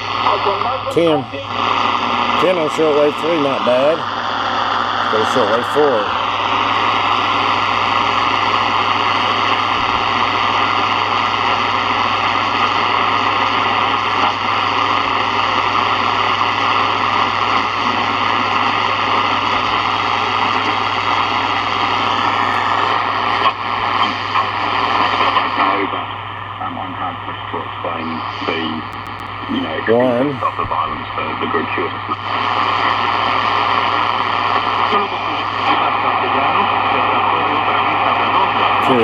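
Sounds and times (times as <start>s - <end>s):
radio static hiss: 0.0s - 39.0s
clicks and crackles: 28.9s - 29.4s.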